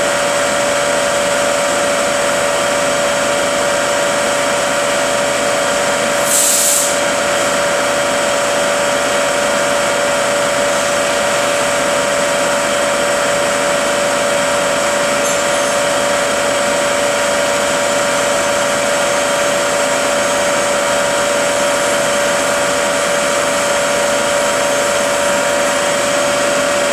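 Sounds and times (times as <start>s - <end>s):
brief hiss: 6.2s - 7.1s
machine noise: 13.0s - 26.9s
transmission whine: 13.2s - 26.9s.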